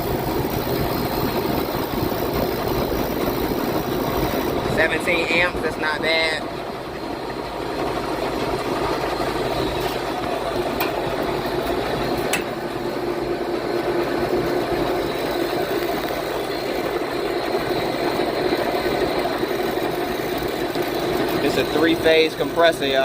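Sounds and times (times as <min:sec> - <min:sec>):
air conditioning unit humming: 0:00.0 - 0:23.0.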